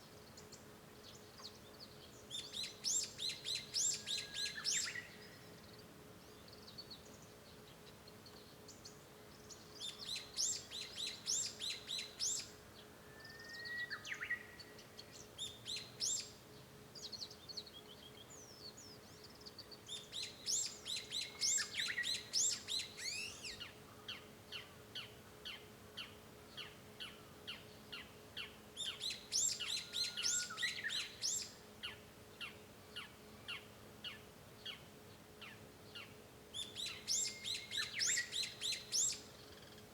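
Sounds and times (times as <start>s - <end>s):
faint steady hum: 0.0s - 39.9s
bird singing whistled notes: 2.3s - 5.4s, 9.8s - 16.4s, 17.1s - 23.7s, 26.6s - 31.6s, 36.0s - 39.8s.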